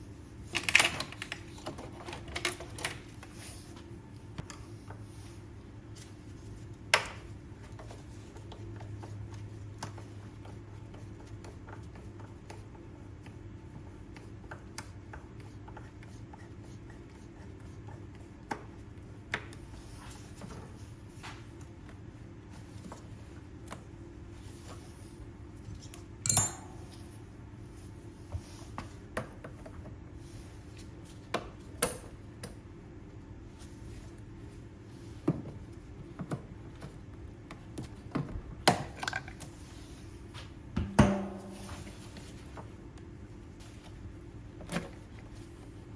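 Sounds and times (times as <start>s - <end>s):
metal tools clinking: 26.2s - 26.7s
steady low hum: 39.4s - 45.9s.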